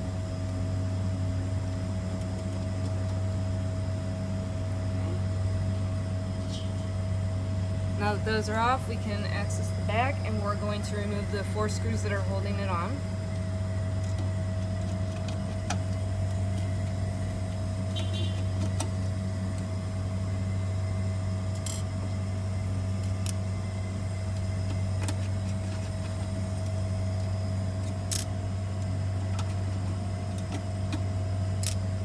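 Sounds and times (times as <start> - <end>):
low machine hum: 0.0 - 32.0
faint high whine: 4.4 - 14.3
small sharp clicks: 31.6 - 31.8.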